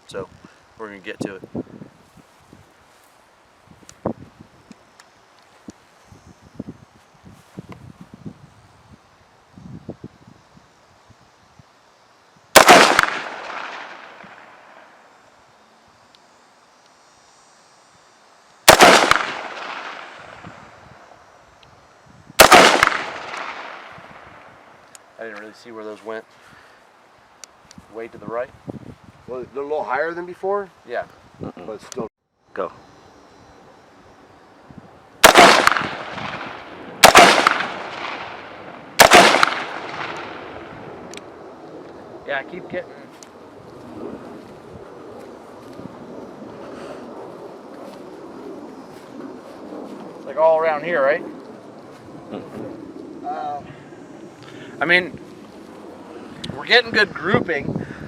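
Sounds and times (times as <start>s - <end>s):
rifle shots with echo: 12.6s - 14.6s, 18.7s - 20.4s, 22.4s - 24.5s, 35.2s - 40.8s.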